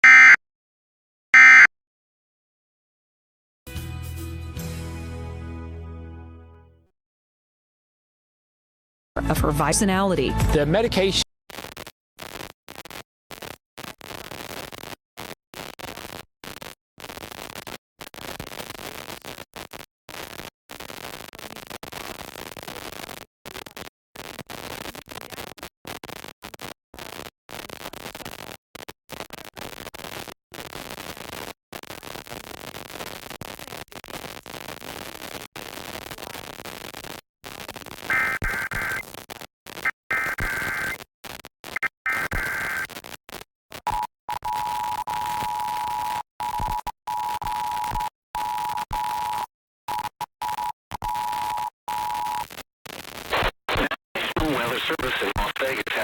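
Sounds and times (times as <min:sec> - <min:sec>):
radio static hiss: 0:11.5 - 0:46.6, 0:48.7 - 0:56.0
screechy data bursts: 0:36.4 - 0:54.0.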